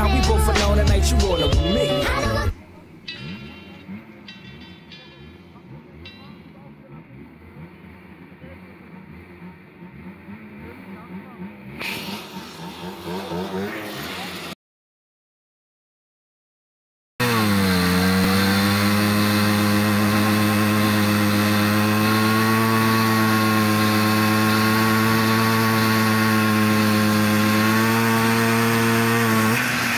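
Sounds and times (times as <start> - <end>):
moped engine running: 0.0 - 14.6, 17.2 - 29.9.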